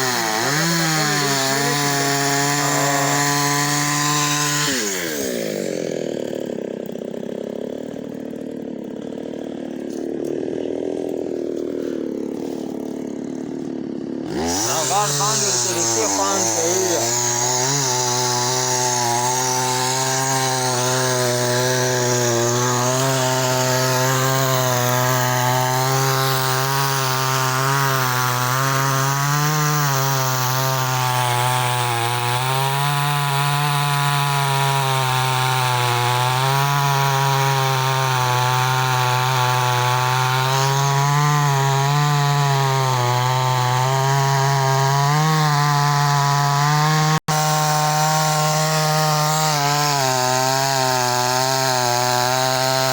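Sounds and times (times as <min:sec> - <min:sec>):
chainsaw cutting wood: 0:00.0 - 0:52.9.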